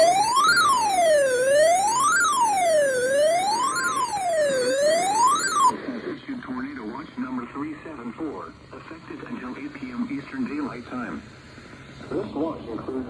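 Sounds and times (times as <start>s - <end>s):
wailing alert tone: 0.0s - 5.7s.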